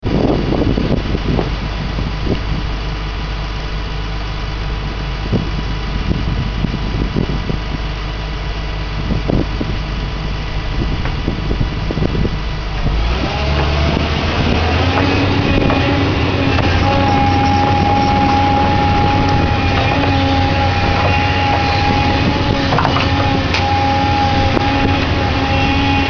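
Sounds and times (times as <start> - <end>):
excavator diesel engine running: 0.0 - 26.0
short knocks: 13.4 - 26.0.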